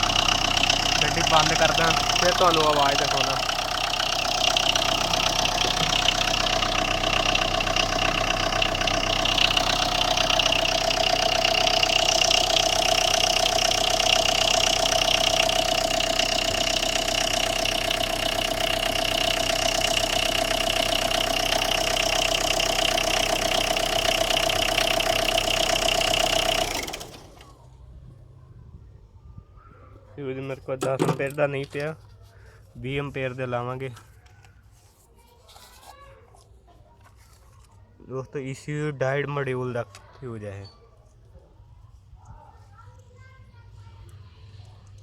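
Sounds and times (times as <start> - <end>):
diesel engine idling with knock: 0.0 - 27.6, 30.8 - 31.9.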